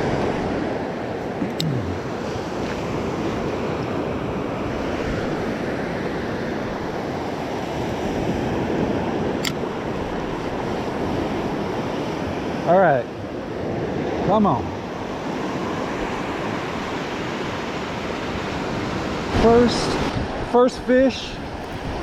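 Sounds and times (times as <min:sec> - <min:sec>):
ocean surf breaking: 0:00.0 - 0:22.0
wind buffeting microphone: 0:14.8 - 0:20.6, 0:21.3 - 0:22.0.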